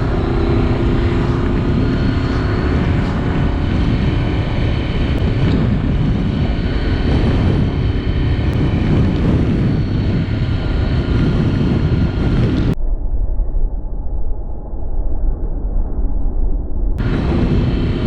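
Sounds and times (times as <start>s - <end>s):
motorcycle engine running: 0.0s - 12.8s
wind rush: 0.0s - 18.0s.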